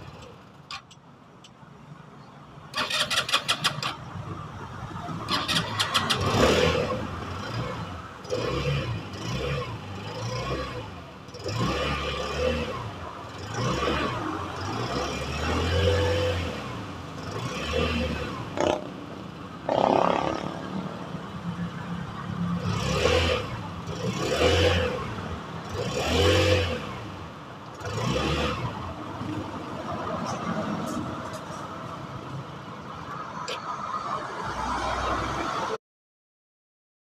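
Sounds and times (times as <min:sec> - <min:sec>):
scooter engine revving: 0:02.7 - 0:04.1, 0:05.2 - 0:19.0, 0:22.6 - 0:27.2.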